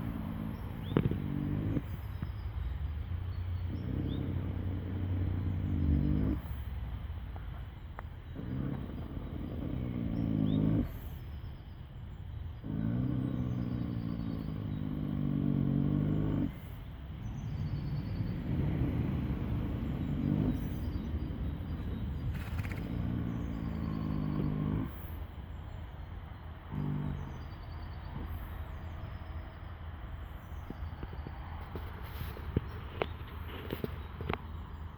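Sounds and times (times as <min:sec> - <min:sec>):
horse snoring: 0:00.0 - 0:02.3, 0:03.6 - 0:06.7, 0:08.2 - 0:11.2, 0:12.6 - 0:25.4, 0:26.7 - 0:28.8.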